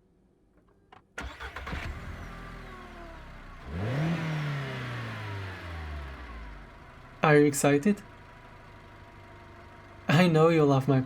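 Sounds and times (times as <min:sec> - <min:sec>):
car engine starting and revving: 0:01.2 - 0:11.0.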